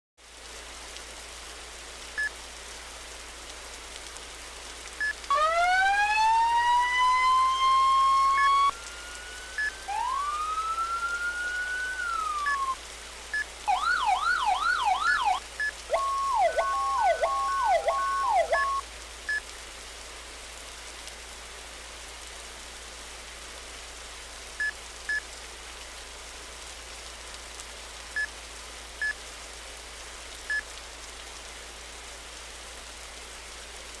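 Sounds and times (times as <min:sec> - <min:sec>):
siren sweeping up and down: 0:05.3 - 0:12.8, 0:13.7 - 0:18.8
short high beeps: 0:15.9 - 0:18.8.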